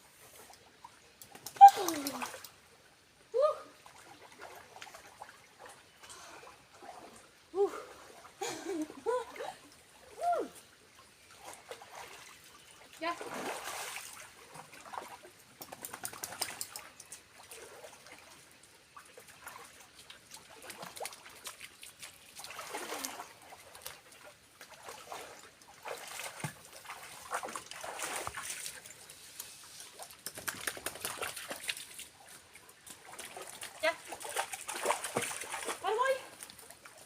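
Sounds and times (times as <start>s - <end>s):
small waterfall splashing: 32.9s - 37.0s.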